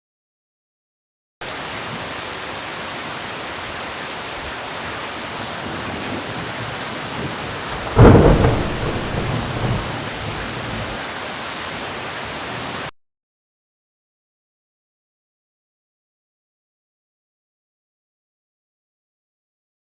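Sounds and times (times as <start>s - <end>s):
heavy rain hissing: 1.4s - 12.9s
loud thunderclap rumbling: 5.6s - 11.0s.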